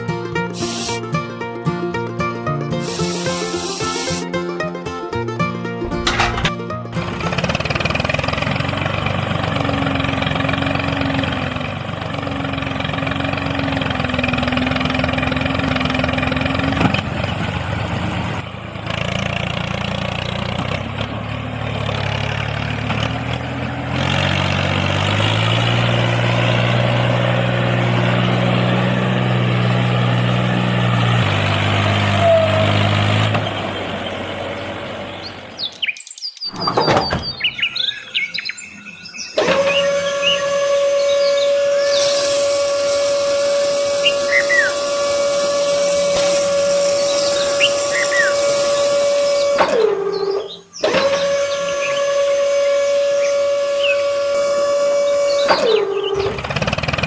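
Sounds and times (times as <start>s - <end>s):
tractor engine running: 5.8s - 19.0s, 36.5s - 37.8s.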